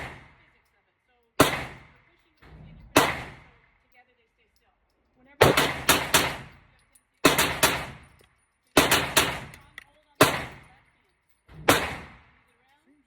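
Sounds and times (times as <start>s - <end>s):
pistol shots: 0.0s - 0.4s, 1.4s - 2.0s, 2.9s - 3.5s, 5.4s - 6.6s, 7.2s - 10.7s, 11.6s - 12.4s.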